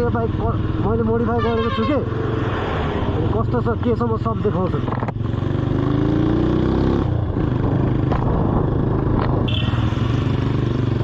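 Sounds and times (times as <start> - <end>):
motorcycle engine revving: 4.7 - 11.0.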